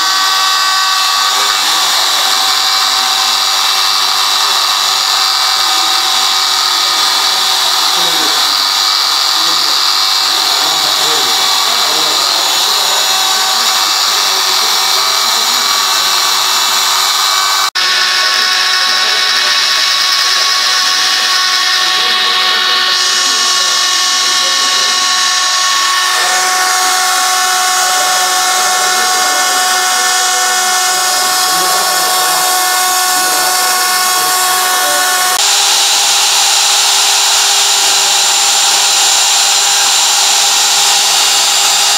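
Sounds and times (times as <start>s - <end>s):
cnc router whining: 0.0s - 41.9s.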